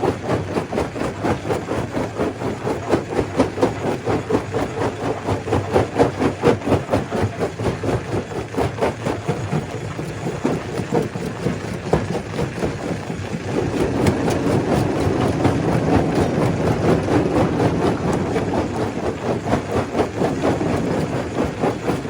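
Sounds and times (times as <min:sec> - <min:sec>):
machine drone: 0:12.2 - 0:22.0.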